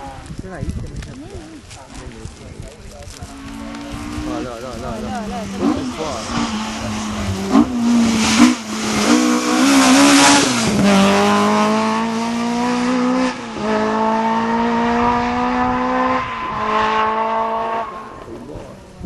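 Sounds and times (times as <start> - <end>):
rally car engine accelerating: 3.3 - 18.6.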